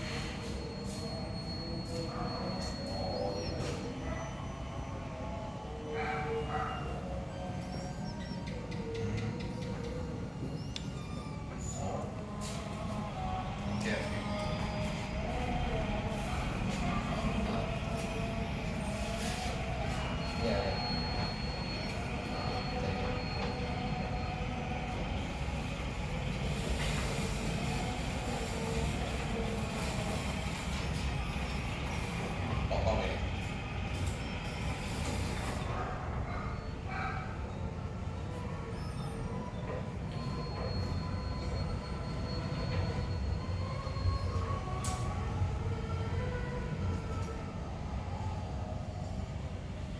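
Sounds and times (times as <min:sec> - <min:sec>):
thin high whine: 0:10.4 - 0:37.6.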